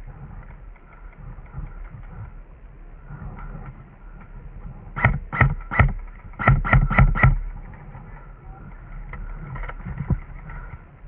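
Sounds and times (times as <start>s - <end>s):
airsoft gun shots: 5.0s - 7.4s.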